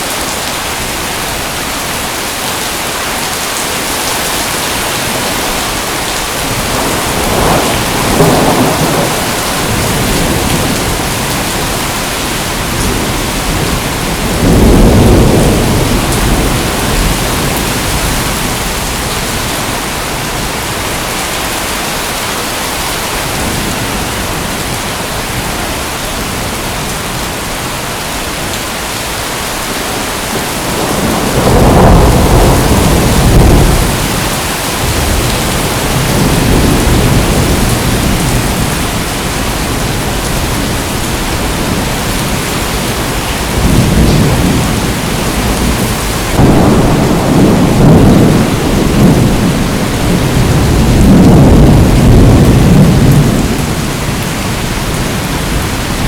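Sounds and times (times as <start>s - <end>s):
heavy rain: 0.0s - 56.0s
thunder rumbling: 3.6s - 21.2s, 29.6s - 56.0s.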